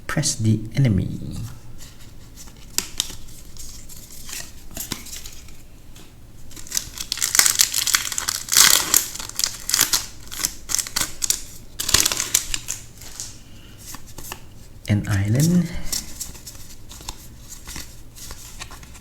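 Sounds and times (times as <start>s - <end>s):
cards being handled: 1.8s - 19.0s
foil wrapper crinkling: 6.5s - 14.4s, 15.3s - 19.0s.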